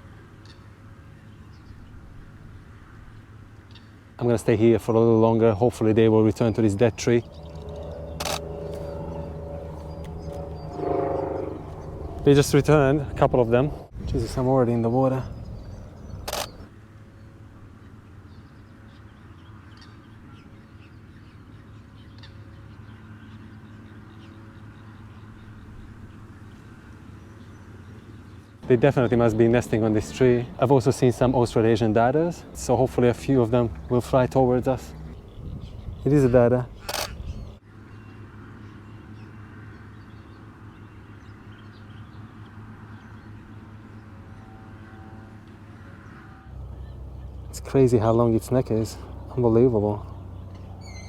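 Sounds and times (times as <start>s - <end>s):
birds chirping: 0.4s - 16.7s, 17.8s - 51.0s
steady low hum: 5.3s - 16.7s
steady low rumble: 5.4s - 16.7s
faint bird chirps: 50.0s - 51.0s.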